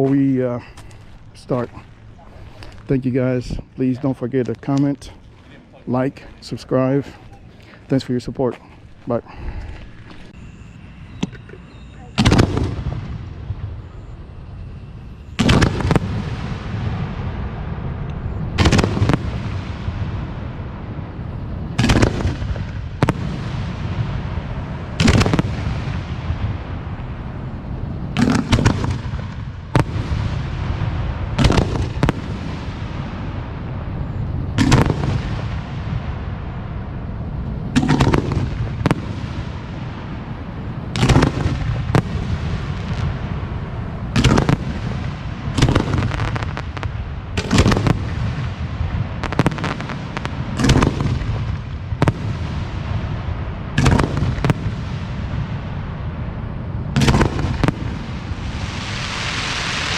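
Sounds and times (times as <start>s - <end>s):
low rumble: 0.0s - 21.8s, 29.0s - 52.0s
firework booms: 0.0s - 59.9s.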